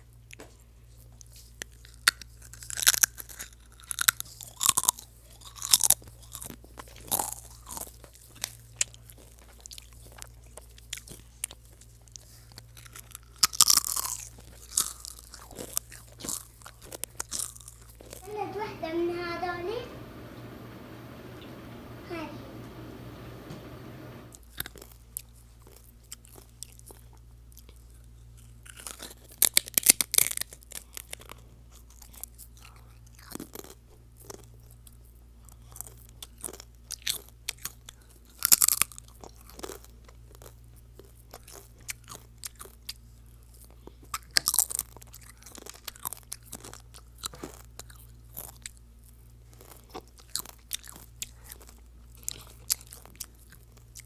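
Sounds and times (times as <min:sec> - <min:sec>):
crunchy chewing: 0:12.5 - 0:18.1, 0:35.6 - 0:54.0
faint low hum: 0:18.2 - 0:24.4.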